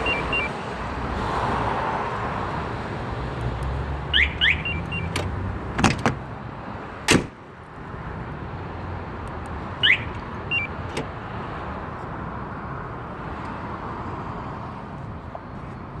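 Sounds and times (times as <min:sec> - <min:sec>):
alarm siren chirp: 0:00.0 - 0:00.6, 0:04.1 - 0:05.2, 0:09.8 - 0:10.7
sharp clunks: 0:05.1 - 0:06.2, 0:07.1 - 0:07.4.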